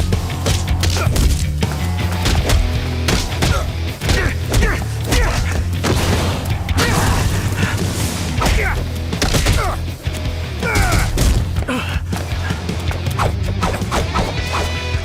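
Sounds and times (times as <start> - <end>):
hits and thuds: 0.0 - 9.8, 10.6 - 11.7.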